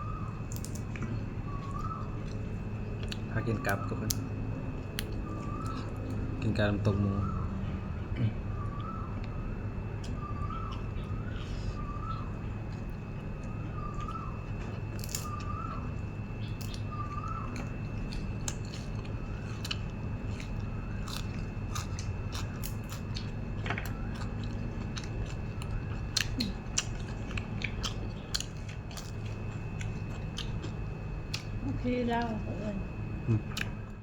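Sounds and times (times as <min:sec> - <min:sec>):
steady low hum: 0:00.0 - 0:34.0
person chewing and crunching: 0:00.3 - 0:06.5, 0:08.8 - 0:31.6, 0:33.2 - 0:34.0.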